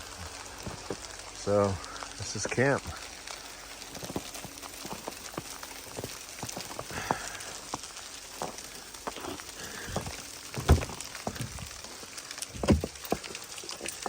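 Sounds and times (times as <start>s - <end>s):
dull thump: 10.0s - 11.7s, 12.6s - 13.0s.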